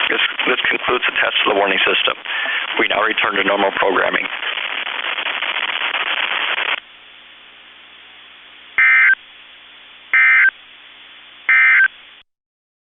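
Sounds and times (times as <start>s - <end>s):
faint steady hiss: 0.0s - 12.2s
loud radio static hiss: 0.0s - 12.2s
emergency alert data tones: 8.8s - 9.2s, 10.1s - 10.6s, 11.5s - 11.9s.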